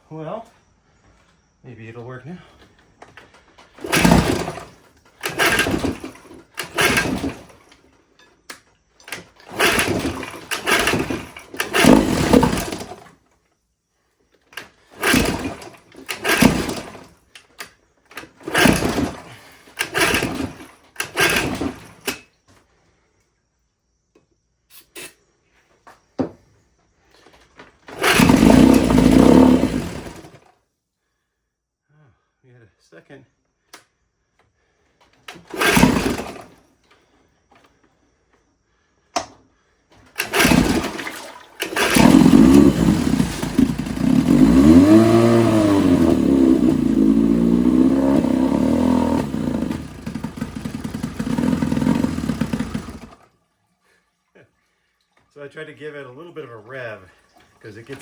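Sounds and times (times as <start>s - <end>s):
starter cord pulls: 3.4s - 7.8s, 8.5s - 13.1s, 14.5s - 22.2s, 27.8s - 30.4s, 35.2s - 36.6s, 40.0s - 53.2s
outboard engine running: 3.8s - 4.7s, 5.3s - 7.4s, 9.5s - 13.0s, 15.0s - 15.6s, 16.2s - 17.0s, 18.5s - 19.2s, 28.0s - 30.3s, 35.5s - 36.4s, 40.2s - 53.2s.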